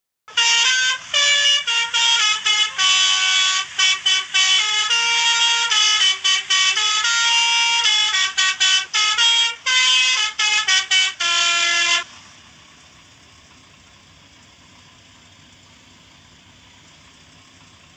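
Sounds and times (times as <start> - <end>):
musical air horn melody: 0.3 - 12.2
faint engine hum: 0.3 - 17.9.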